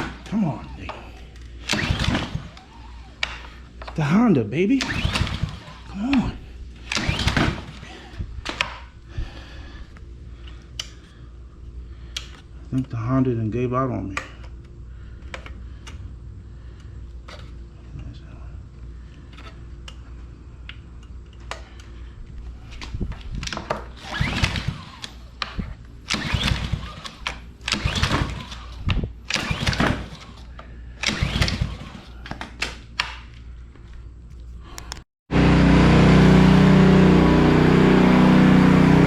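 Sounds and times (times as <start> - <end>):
recoil cord pull-starting engine: 0.0 - 9.4, 22.7 - 32.7, 34.8 - 39.0
small gas engine running: 0.0 - 9.5, 23.4 - 32.2, 34.8 - 39.0.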